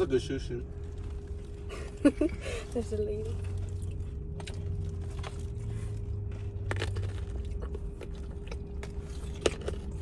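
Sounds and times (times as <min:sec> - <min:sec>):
low hum: 0:00.0 - 0:10.0
crunchy chewing: 0:02.6 - 0:10.0.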